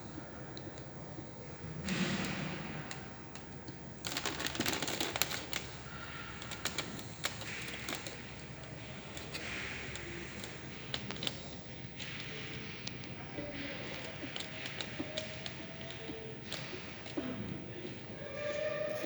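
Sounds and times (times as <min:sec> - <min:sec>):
plastic clicks and rattles: 0:01.8 - 0:08.5, 0:09.1 - 0:17.2.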